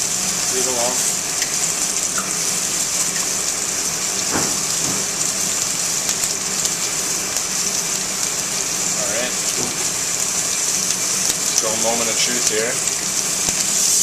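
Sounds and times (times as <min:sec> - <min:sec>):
pork chop sizzling in skillet: 0:00.0 - 0:14.0.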